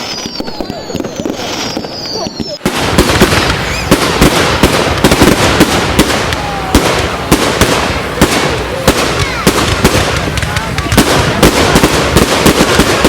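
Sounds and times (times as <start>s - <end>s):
fireworks bangs crackling: 0.0s - 13.0s
rushing hiss: 0.0s - 13.0s.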